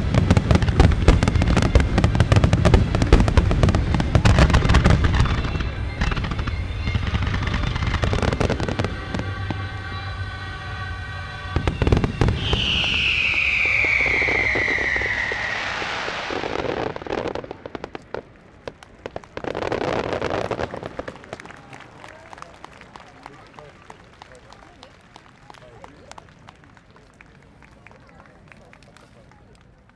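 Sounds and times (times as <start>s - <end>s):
fireworks booming and crackling: 0.0s - 9.7s, 11.4s - 21.9s
crowd noise: 0.0s - 29.9s
music: 4.8s - 12.3s
falling firework whistle: 11.6s - 16.9s.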